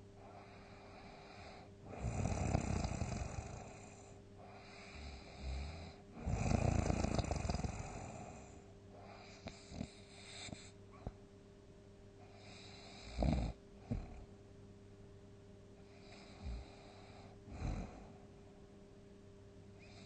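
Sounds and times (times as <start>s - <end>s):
faint steady hum: 0.0s - 20.0s
person snoring: 0.2s - 10.7s, 12.3s - 14.3s, 15.9s - 18.2s.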